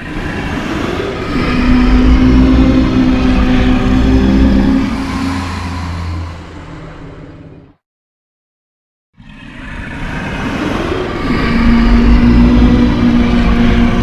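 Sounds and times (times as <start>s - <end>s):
deep rumble: 0.2s - 7.8s, 11.2s - 14.0s.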